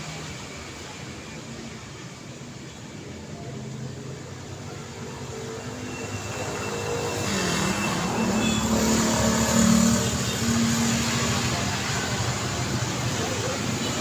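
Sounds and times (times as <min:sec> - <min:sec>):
street traffic: 0:00.0 - 0:14.0
vehicle engine passing: 0:05.7 - 0:13.8.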